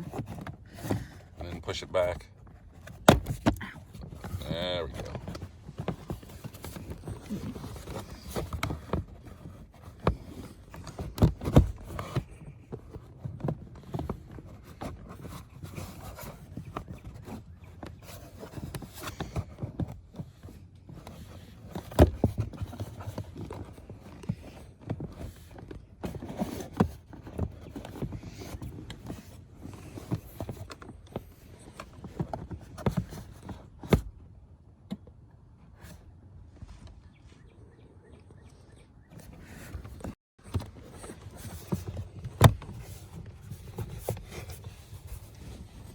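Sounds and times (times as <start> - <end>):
plastic trim knocking and scraping: 0.0 - 34.2, 39.2 - 45.9.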